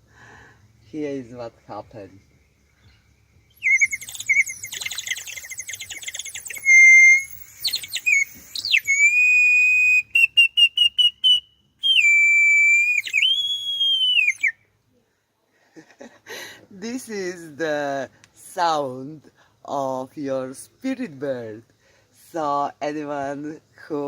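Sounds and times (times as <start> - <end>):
water whistle warbling: 3.6 - 14.5.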